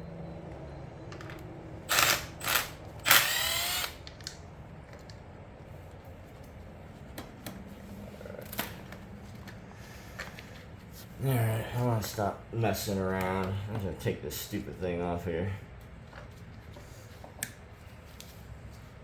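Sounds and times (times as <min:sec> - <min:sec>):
faint low hum: 0:00.0 - 0:19.0
small mechanism whirring: 0:01.9 - 0:04.4.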